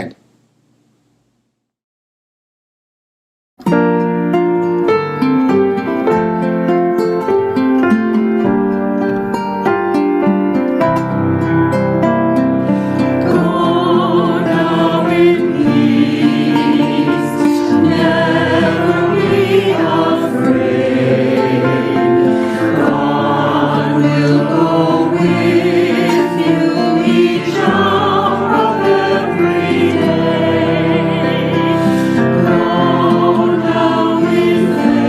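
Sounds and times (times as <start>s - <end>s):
choir singing a hymn: 12.6s - 35.0s.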